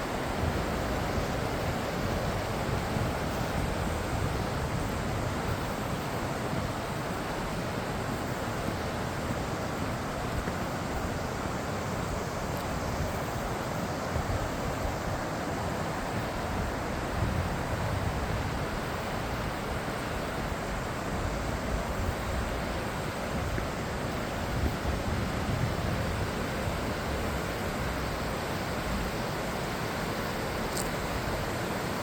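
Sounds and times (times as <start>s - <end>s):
wind buffeting microphone: 0.0s - 29.2s
waterfall rushing: 0.0s - 32.0s.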